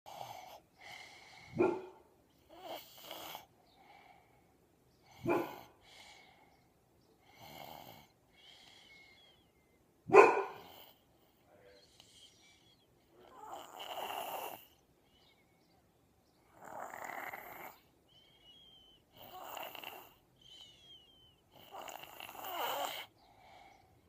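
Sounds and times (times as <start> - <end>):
child snoring: 0.1 - 1.6, 2.5 - 4.2, 7.2 - 9.0, 13.2 - 14.8, 16.4 - 17.9, 18.5 - 23.8
soft breaths: 0.1 - 24.0.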